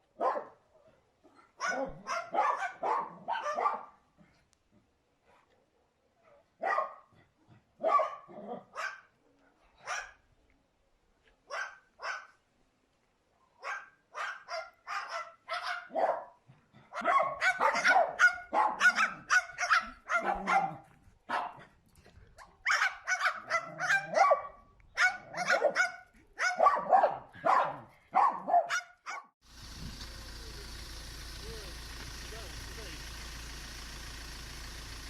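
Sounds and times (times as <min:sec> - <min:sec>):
dog barking: 0:00.2 - 0:00.6, 0:01.4 - 0:04.0, 0:05.8 - 0:07.1, 0:07.8 - 0:09.2, 0:09.8 - 0:10.2, 0:11.5 - 0:12.4, 0:13.6 - 0:21.7, 0:22.6 - 0:29.3.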